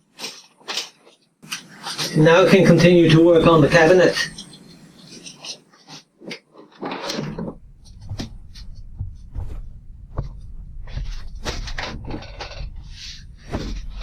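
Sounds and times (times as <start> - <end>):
rustling: 0.0 - 14.0
steady low rumble: 7.3 - 14.0.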